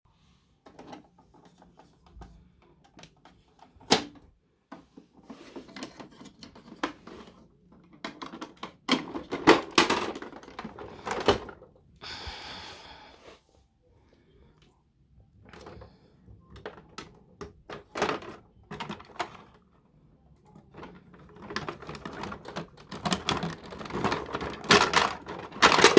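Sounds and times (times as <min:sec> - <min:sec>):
plastic toy truck clicking: 0:05.5 - 0:11.6, 0:16.5 - 0:19.7, 0:20.4 - 0:25.9.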